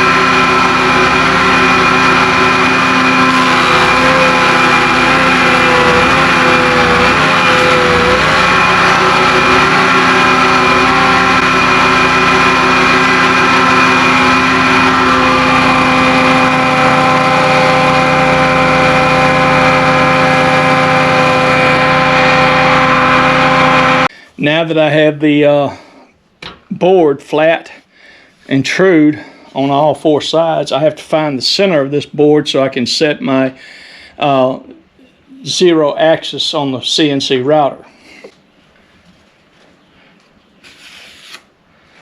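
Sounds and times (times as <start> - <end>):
electric planer and dust collector: 0.0 - 24.1.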